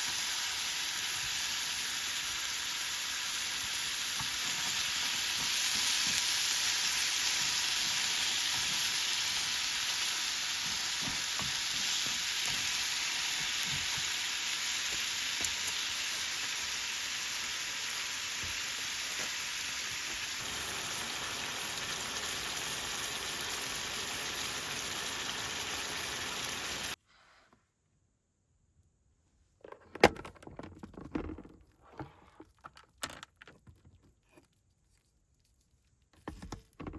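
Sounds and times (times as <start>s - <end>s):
food frying sizzle: 0.0s - 27.0s.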